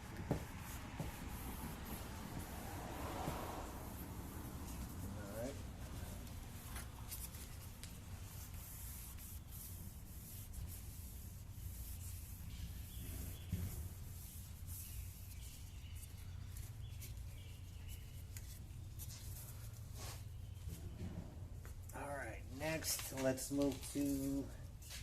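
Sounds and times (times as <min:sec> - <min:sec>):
scratchy rubbing on plastic lens: 0:04.4 - 0:20.6.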